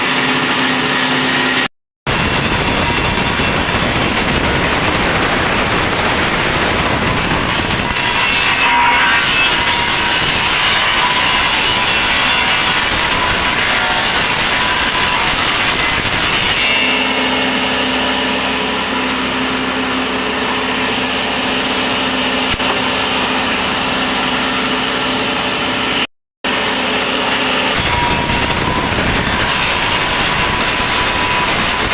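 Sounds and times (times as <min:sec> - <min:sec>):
motor hum: 0:00.0 - 0:08.3, 0:17.0 - 0:31.9
saw machine running: 0:00.0 - 0:31.9.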